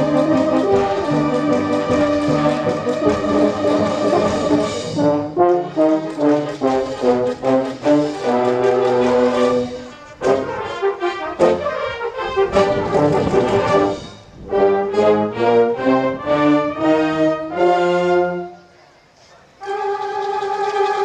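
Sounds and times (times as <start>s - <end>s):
brass band playing: 0.0s - 18.7s, 19.6s - 21.0s.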